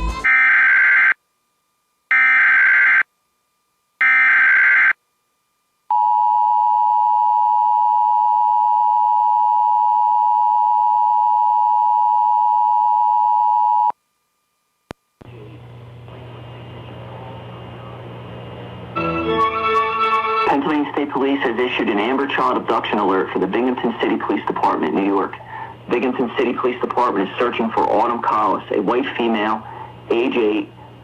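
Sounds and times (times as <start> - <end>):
loud steady attention tone: 18.8 - 23.9.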